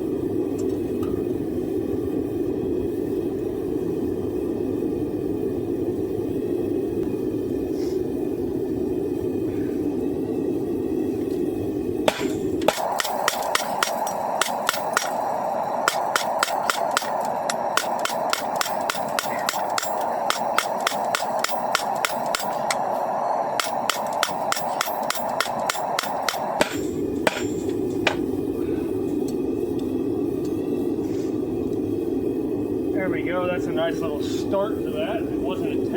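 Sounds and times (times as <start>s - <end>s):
steady rushing noise: 0.0s - 35.9s
hammer striking hot steel: 12.0s - 28.3s.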